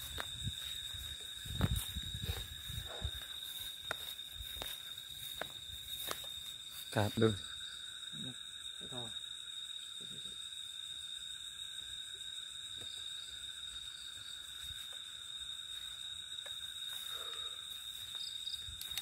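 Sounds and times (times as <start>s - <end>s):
crickets trilling: 0.0s - 19.0s
faint ticks: 18.7s - 19.0s.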